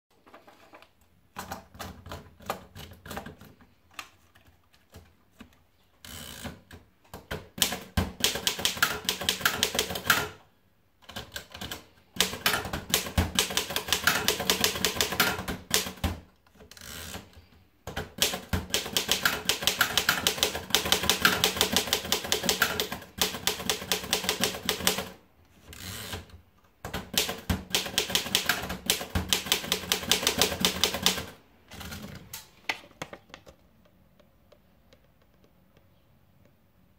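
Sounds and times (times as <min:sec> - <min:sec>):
typewriter keystrokes: 0:07.3 - 0:10.4, 0:11.0 - 0:16.2, 0:17.9 - 0:25.2, 0:26.9 - 0:31.4.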